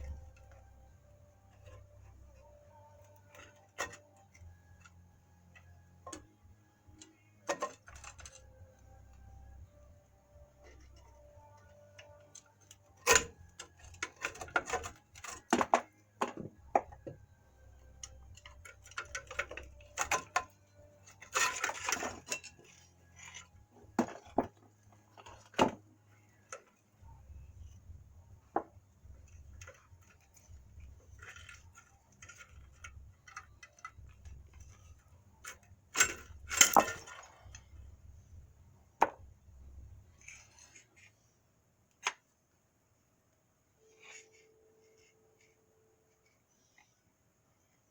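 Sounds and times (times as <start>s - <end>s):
faint low hum: 0.0s - 47.9s
metal tools clinking: 18.0s - 25.7s, 29.3s - 37.9s.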